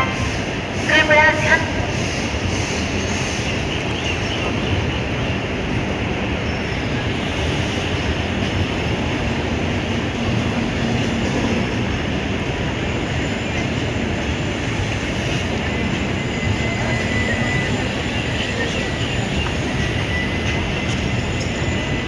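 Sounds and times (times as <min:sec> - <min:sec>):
train wheels rumbling on rail: 0:00.0 - 0:22.0.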